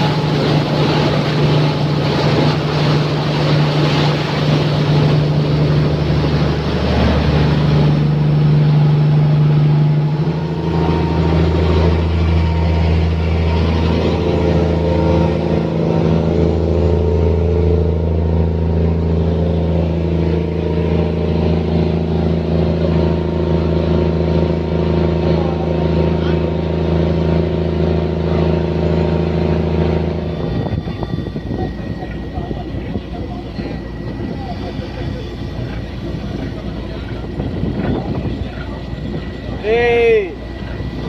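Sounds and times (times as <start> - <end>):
rushing noise: 0.0 - 25.2
boat engine running: 0.0 - 41.0.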